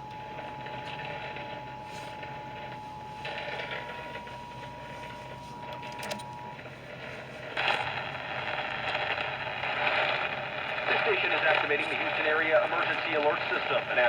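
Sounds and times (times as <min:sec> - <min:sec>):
radio static hiss: 0:07.1 - 0:14.0.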